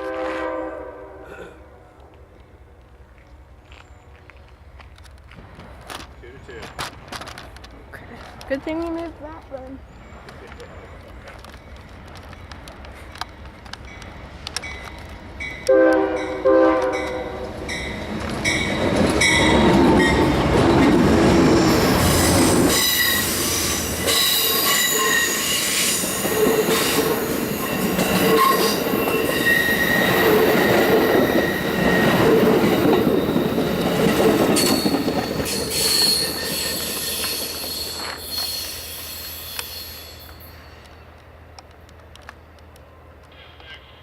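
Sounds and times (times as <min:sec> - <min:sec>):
rail clatter: 0:10.1 - 0:38.8
train wheel squeal: 0:21.6 - 0:41.0.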